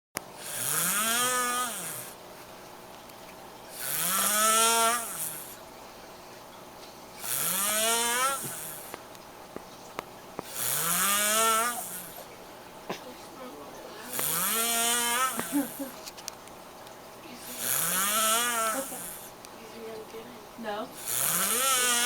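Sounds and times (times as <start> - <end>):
wheezy snoring: 0.4 - 2.2, 3.7 - 5.6, 7.2 - 9.0, 10.4 - 12.3, 14.0 - 16.0, 17.4 - 19.4, 21.0 - 22.0.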